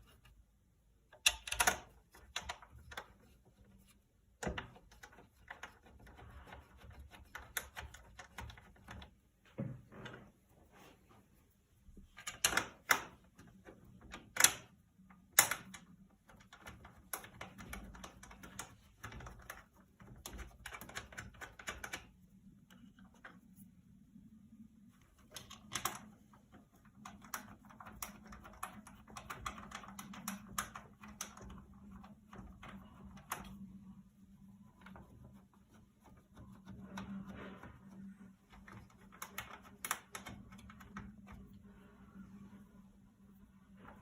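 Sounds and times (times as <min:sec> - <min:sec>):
rapid clicking and rattling of tools: 0:01.1 - 0:03.0
clicks and knocks of fixings: 0:01.1 - 0:10.2, 0:12.1 - 0:23.6, 0:25.2 - 0:33.8, 0:34.8 - 0:41.9.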